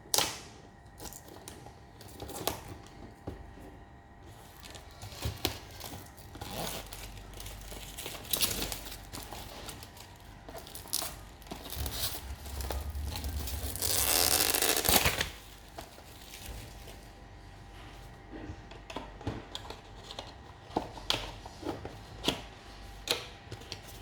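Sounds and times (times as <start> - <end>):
paper packaging being opened: 4.4 - 17.1.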